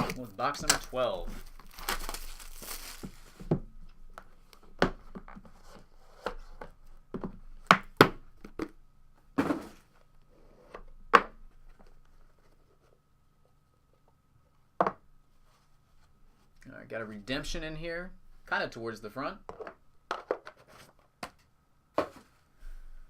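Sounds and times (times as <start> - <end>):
cardboard and wrapping rustling: 0.0 - 3.7.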